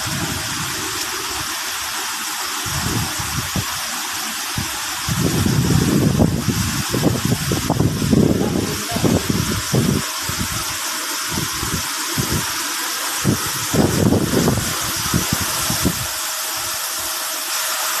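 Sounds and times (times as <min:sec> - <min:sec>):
water gushing: 0:00.0 - 0:18.0.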